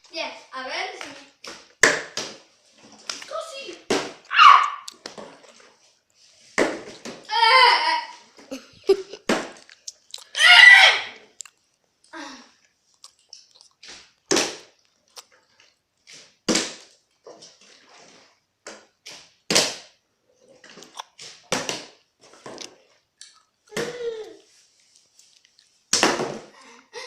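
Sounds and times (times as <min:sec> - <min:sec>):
child crying out: 0:04.3 - 0:04.9, 0:07.3 - 0:08.2, 0:10.4 - 0:11.2.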